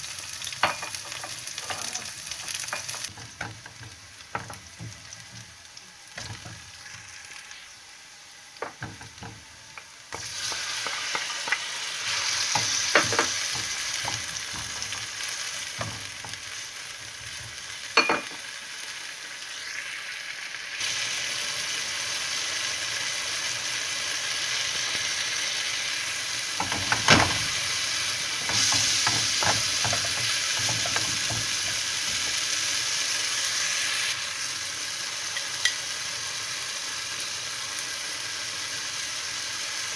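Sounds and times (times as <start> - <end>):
food sizzling in a pan: 0.0 - 39.9
utensil knocking against pan: 28.4 - 32.4.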